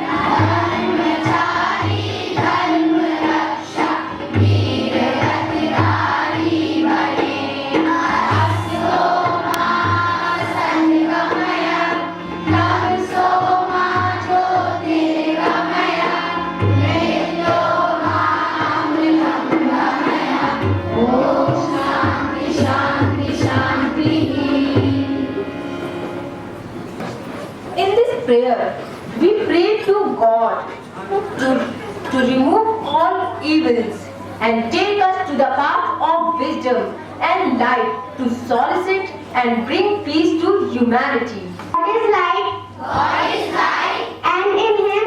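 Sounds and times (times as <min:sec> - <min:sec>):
choir singing: 0:00.0 - 0:25.5, 0:42.8 - 0:44.2
held instrumental tone: 0:00.0 - 0:27.8.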